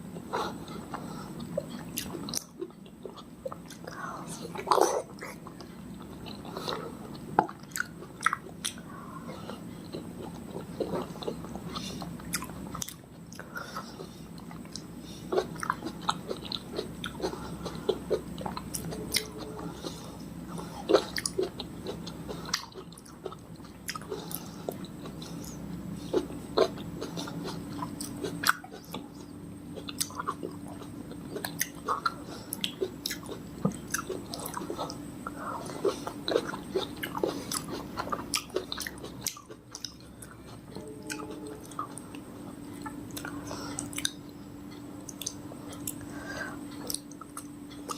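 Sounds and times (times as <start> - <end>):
chewing and biting fruit: 0.2 - 47.9
sharp mouth clicks: 45.1 - 46.0.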